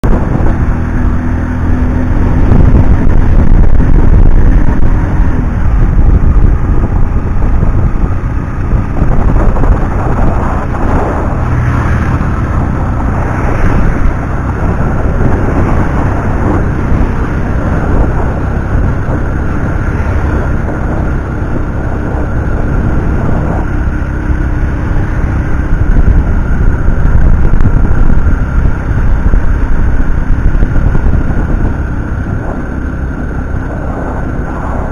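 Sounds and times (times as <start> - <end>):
vehicle low rumble: 0.0 - 34.9.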